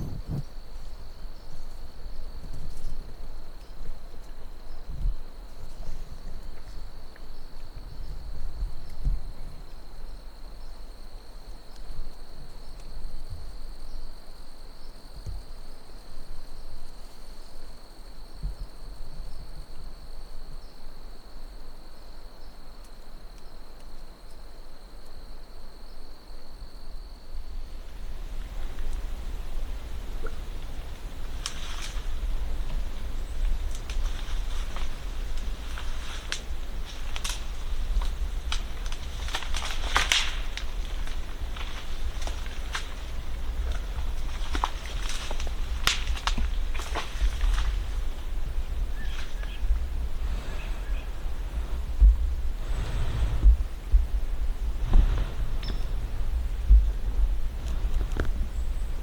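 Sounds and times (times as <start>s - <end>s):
wind on microphone: 0.0s - 3.3s, 27.5s - 59.0s.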